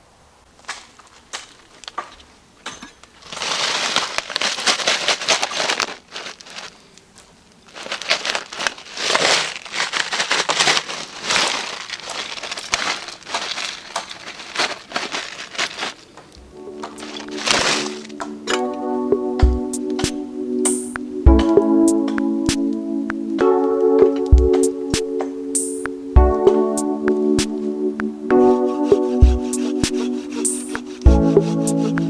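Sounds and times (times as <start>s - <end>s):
campfire crackling: 3.0s - 18.6s.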